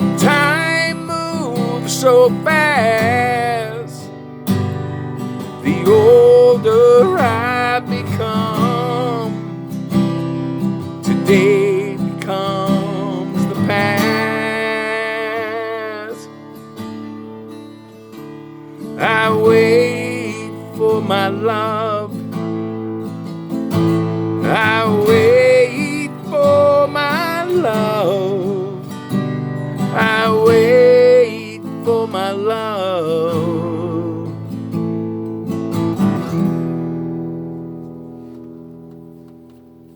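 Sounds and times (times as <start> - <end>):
person singing wordless notes: 0.0 - 4.1, 5.5 - 9.5, 11.0 - 16.5, 19.0 - 22.2, 24.4 - 28.9
acoustic guitar strumming: 0.0 - 39.9.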